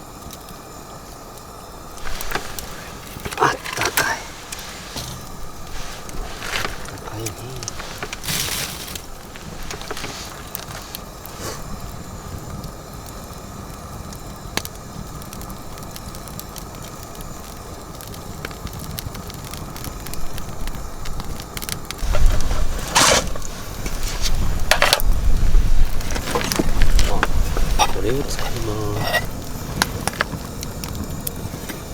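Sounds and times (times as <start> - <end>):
wood fire crackling: 0.0 - 31.9
wind buffeting microphone: 20.0 - 31.6.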